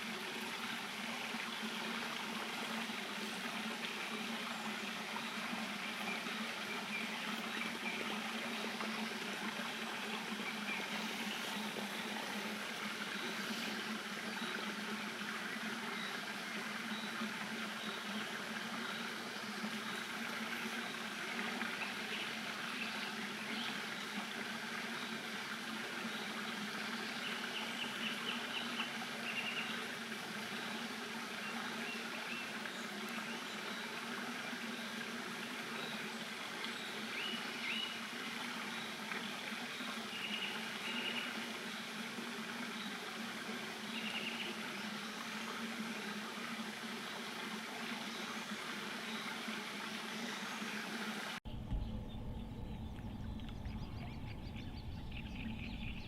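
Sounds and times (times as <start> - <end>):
steady outdoor hiss: 0.0 - 56.0
high bird chirps: 51.5 - 56.0
low hum: 51.5 - 56.0.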